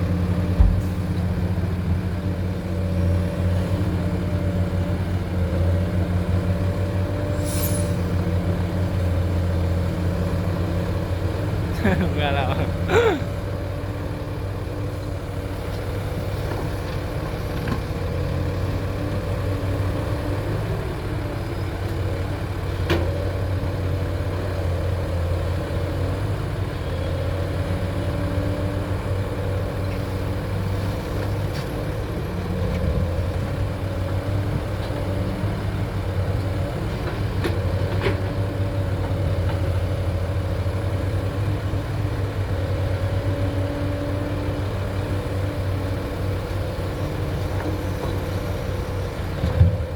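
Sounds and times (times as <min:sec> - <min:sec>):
excavator diesel engine running: 0:08.0 - 0:49.9.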